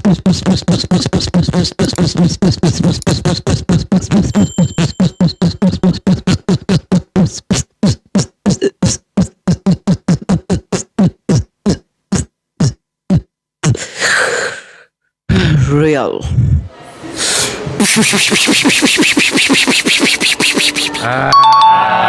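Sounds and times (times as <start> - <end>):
beatboxed mouth pulses: 0.0 - 14.1, 17.8 - 21.4.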